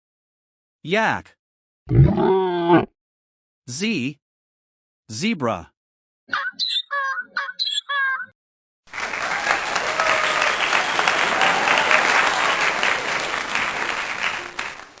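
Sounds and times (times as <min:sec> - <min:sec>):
crowd clapping: 0:08.9 - 0:15.0.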